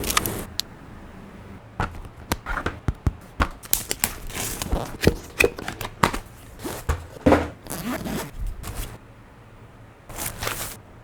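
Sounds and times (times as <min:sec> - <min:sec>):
packaging clicks and taps: 0:01.8 - 0:07.8
packaging rustle: 0:03.5 - 0:09.0, 0:10.1 - 0:10.8.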